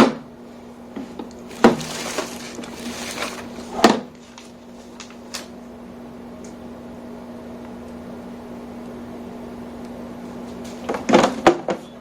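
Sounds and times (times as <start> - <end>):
steady low hum: 0.0 - 12.0
plastic parts knocking and clattering: 1.5 - 4.2.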